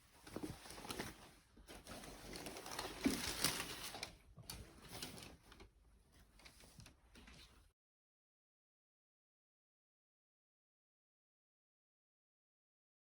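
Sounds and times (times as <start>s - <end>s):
packaging and fabric rustling: 0.0s - 7.7s.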